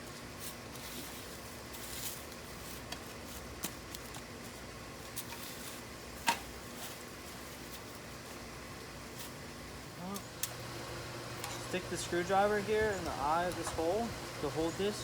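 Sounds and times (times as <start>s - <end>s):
hardware clicks and scuffs: 0.0s - 8.1s.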